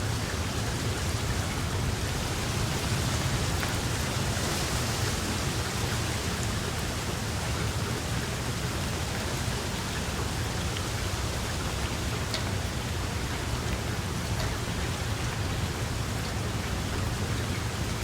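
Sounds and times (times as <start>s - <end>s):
steady rain hiss: 0.0s - 18.0s
raindrop ticks: 9.1s - 18.0s.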